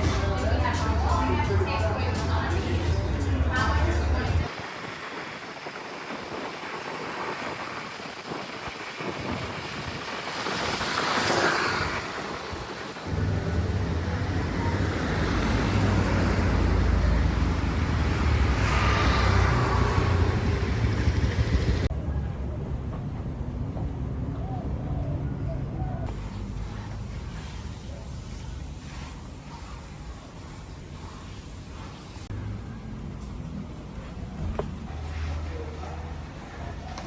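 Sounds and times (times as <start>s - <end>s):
vehicles passing: 0.0s - 5.4s, 10.0s - 22.8s, 32.2s - 37.0s
road traffic: 9.5s - 29.4s, 30.0s - 37.0s
steady low rumble: 12.4s - 23.6s.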